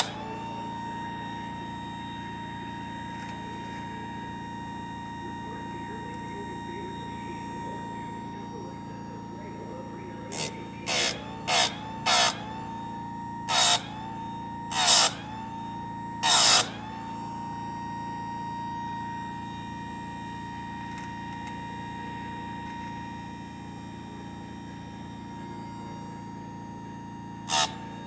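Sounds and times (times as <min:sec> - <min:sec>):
grinder motor whine: 0:00.0 - 0:28.0
grinding rasps: 0:10.3 - 0:12.5, 0:13.5 - 0:13.9.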